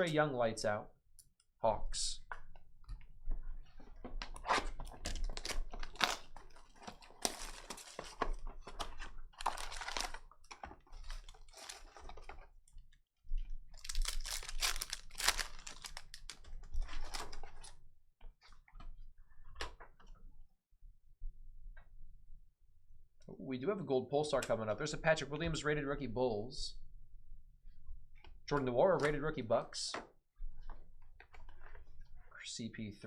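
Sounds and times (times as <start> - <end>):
card wrappers tearing and crinkling: 4.4 - 12.3, 13.8 - 17.6
cards clicking and rustling: 13.8 - 17.6.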